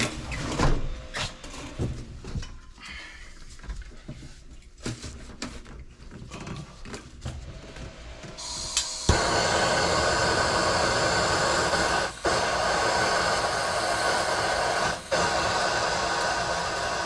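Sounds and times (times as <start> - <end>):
motor-driven machine running: 8.2 - 17.0.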